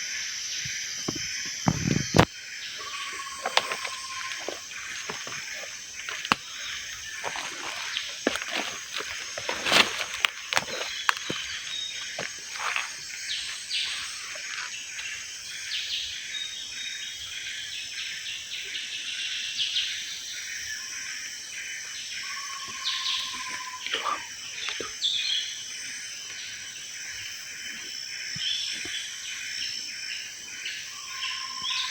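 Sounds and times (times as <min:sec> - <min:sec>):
insects droning: 0:00.0 - 0:31.9
birds chirping and calling: 0:02.8 - 0:15.2.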